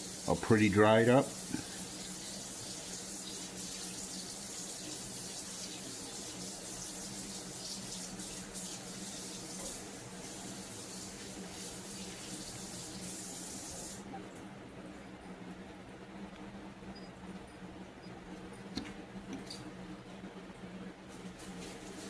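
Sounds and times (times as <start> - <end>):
steady rushing hiss: 0.0 - 14.1
low even hum: 13.2 - 22.0.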